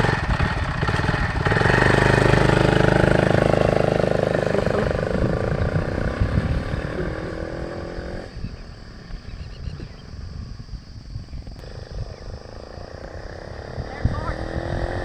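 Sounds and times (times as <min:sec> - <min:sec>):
motorbike exhaust pulsing: 0:00.0 - 0:09.4.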